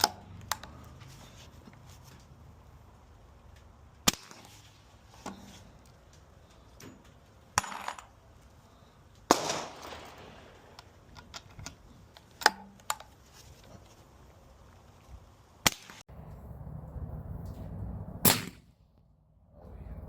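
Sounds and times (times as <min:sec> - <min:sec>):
suppressed rifle shots: 0:09.3 - 0:10.4, 0:18.2 - 0:18.7.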